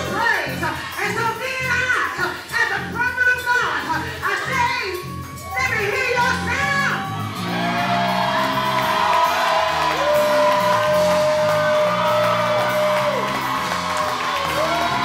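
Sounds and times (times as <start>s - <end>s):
bass line: 0.0s - 15.0s
congregation whooping: 5.0s - 15.0s.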